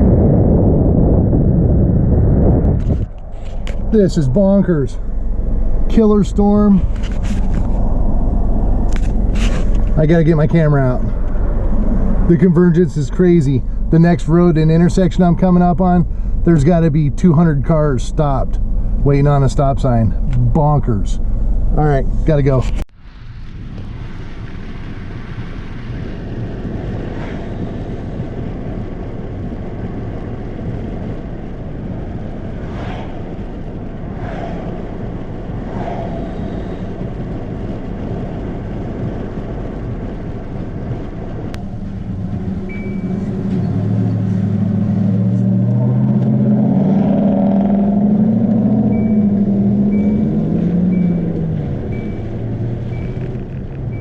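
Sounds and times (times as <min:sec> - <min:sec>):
car engine revving: 0:00.0 - 0:22.8, 0:23.8 - 0:54.0
road noise: 0:00.0 - 0:54.0
short electronic beeps: 0:42.7 - 0:43.2, 0:48.9 - 0:54.0.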